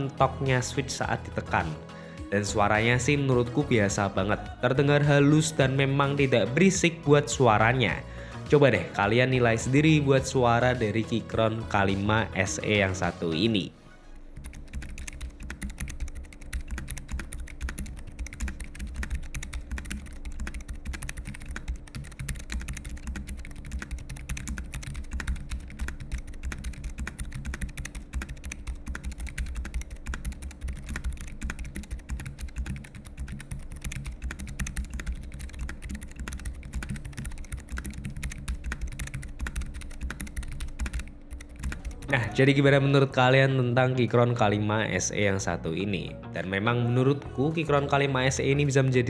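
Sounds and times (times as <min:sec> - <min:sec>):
fast typing on mechanical keyboard: 0:14.3 - 0:42.2.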